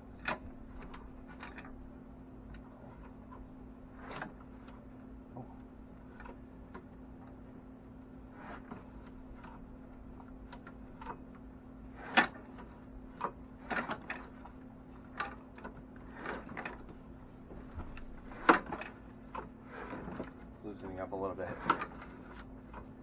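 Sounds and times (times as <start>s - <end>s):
heater humming: 15.9s - 23.0s.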